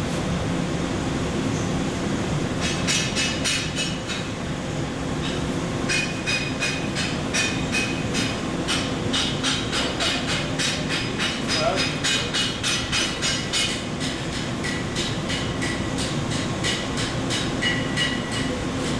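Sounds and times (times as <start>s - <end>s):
hammer striking metal: 5.9s - 18.6s.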